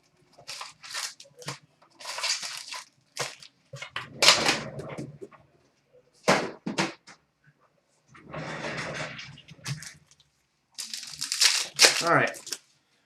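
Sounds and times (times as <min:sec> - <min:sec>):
foil wrapper tearing and crinkling: 0:00.4 - 0:03.5, 0:10.8 - 0:12.6.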